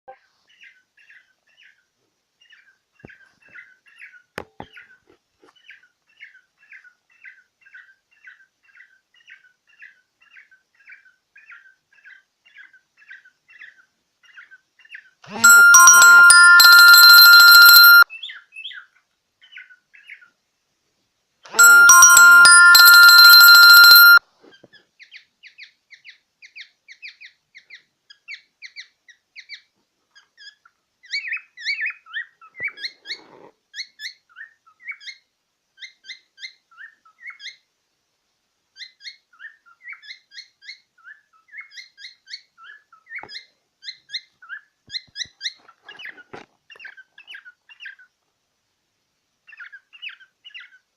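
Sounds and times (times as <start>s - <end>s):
electronic ringtone melody: 15.4s - 18.0s, 21.5s - 24.2s.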